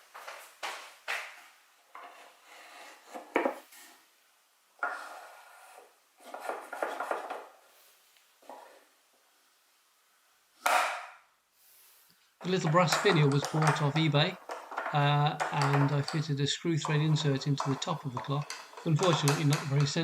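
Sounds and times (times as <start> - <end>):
wood scraping and clicking: 4.8 - 7.5, 12.4 - 20.0.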